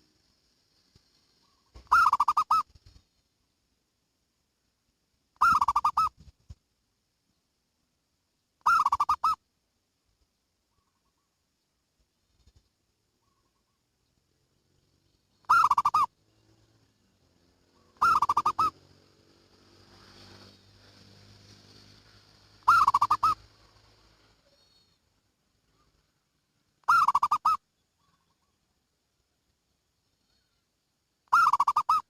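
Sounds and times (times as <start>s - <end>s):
faint hum and hiss: 0.0s - 32.0s
dove cooing: 1.4s - 2.7s, 5.4s - 6.1s, 8.6s - 9.4s, 15.4s - 16.1s, 17.8s - 18.8s, 22.6s - 23.5s, 26.8s - 28.5s, 31.3s - 32.0s.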